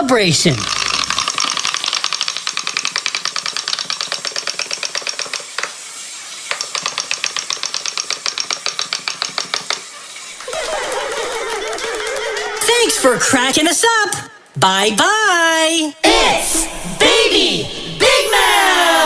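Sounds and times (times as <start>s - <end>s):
rapid ratchet clicking: 0.6s - 9.9s.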